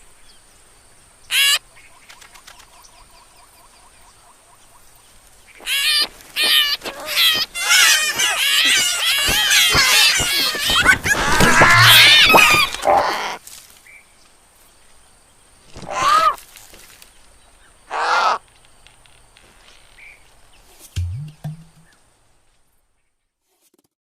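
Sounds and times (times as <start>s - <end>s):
cartoon animal cries: 5.7s - 13.4s
low rising tone: 21.0s - 21.9s.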